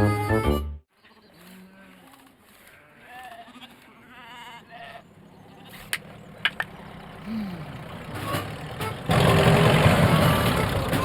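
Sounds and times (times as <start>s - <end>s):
heavy vehicle engine running: 5.1s - 11.0s.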